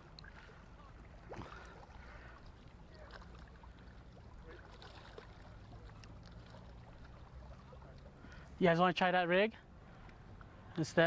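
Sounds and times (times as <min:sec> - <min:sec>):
water lapping against boat hull: 0:00.0 - 0:08.6.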